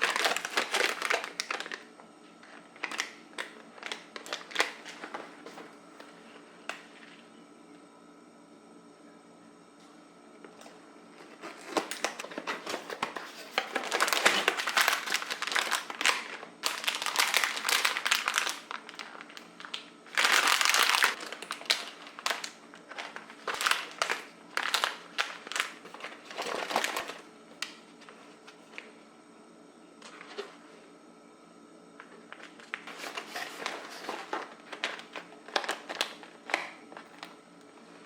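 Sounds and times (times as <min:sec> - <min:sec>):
plastic packaging crinkling: 0:00.0 - 0:05.8, 0:11.2 - 0:28.9, 0:32.0 - 0:37.4.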